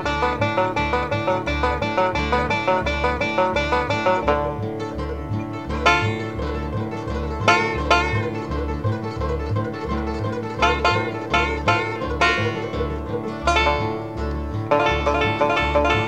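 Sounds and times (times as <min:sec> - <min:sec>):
banjo picking: 0:00.0 - 0:16.0
bass line: 0:00.0 - 0:16.0.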